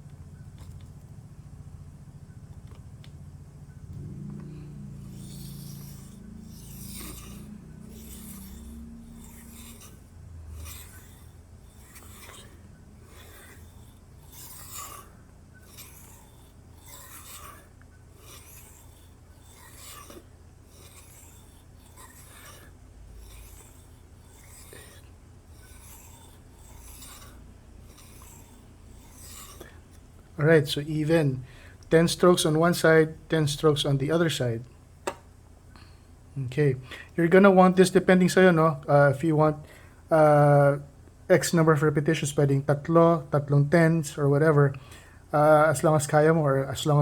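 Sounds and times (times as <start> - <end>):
knife scraping on whetstone: 4.7 - 32.8.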